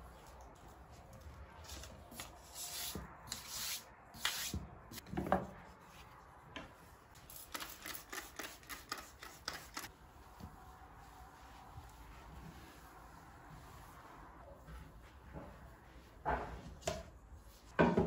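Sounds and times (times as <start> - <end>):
swishing wipes: 7.4 - 16.2.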